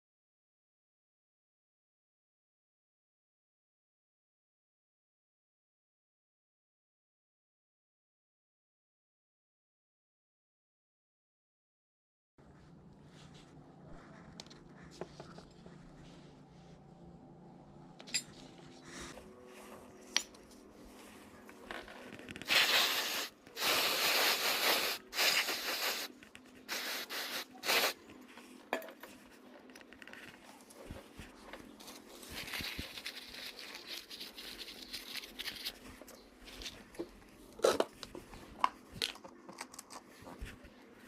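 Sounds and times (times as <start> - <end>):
hissing scraping bursts: 22.4 - 28.0.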